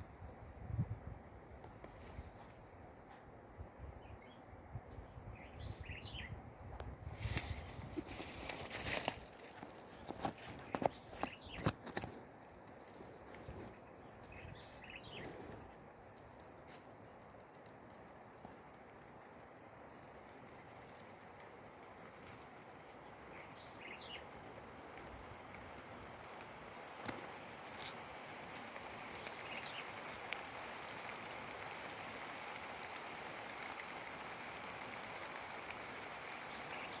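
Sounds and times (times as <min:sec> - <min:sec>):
high-pitched insect trill: 0:00.0 - 0:37.0
bird chirps: 0:04.1 - 0:06.4, 0:13.4 - 0:15.3, 0:23.2 - 0:24.2.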